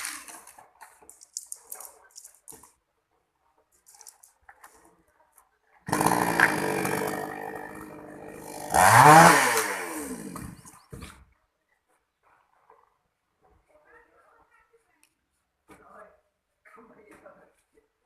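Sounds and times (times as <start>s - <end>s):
chainsaw engine revving: 5.9s - 10.8s.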